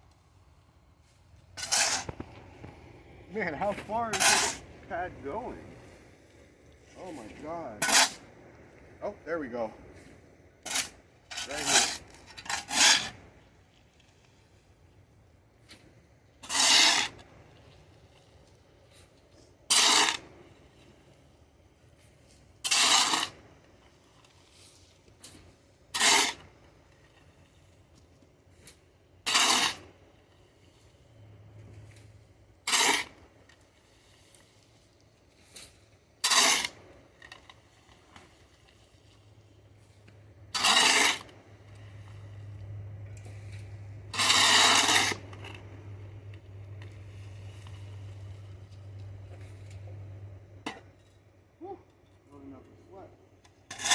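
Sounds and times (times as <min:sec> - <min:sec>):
shovel scraping concrete: 0:01.5 - 0:06.0, 0:07.0 - 0:08.3, 0:10.6 - 0:14.2, 0:15.6 - 0:18.0, 0:18.9 - 0:21.0, 0:22.2 - 0:51.1, 0:53.4 - 0:53.9.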